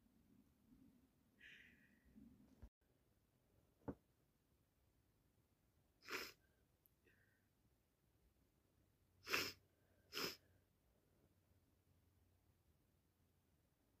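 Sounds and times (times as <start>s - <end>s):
person sneezing: 6.0s - 6.4s, 9.2s - 10.4s.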